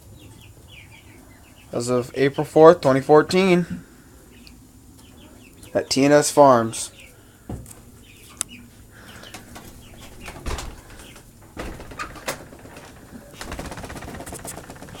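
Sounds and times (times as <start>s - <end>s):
hens and chicks clucking: 3.3s - 13.4s
clicks and rustling: 9.0s - 15.0s
low thumps: 9.1s - 15.0s.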